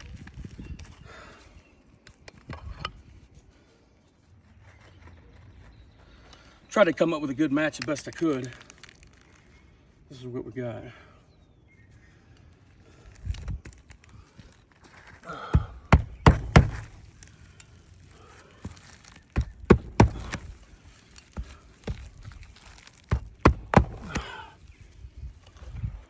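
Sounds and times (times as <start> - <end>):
hammer knocking on roof shingles: 15.4 - 17.0, 19.4 - 20.5, 23.1 - 24.4.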